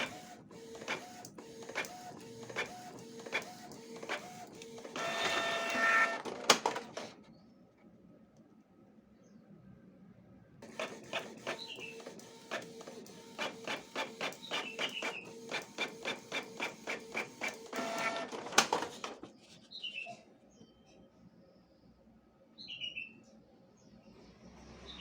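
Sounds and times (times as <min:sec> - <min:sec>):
printer motor whir: 0:00.0 - 0:07.1, 0:10.6 - 0:19.2
printer mechanism clicking: 0:00.8 - 0:07.1, 0:10.7 - 0:19.2.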